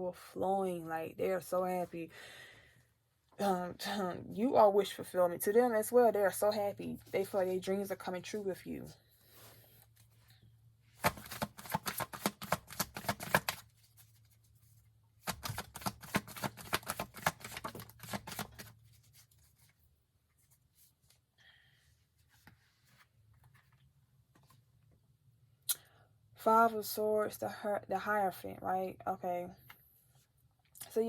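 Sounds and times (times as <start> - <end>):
cards being shuffled: 11.0 - 14.6, 15.2 - 19.8.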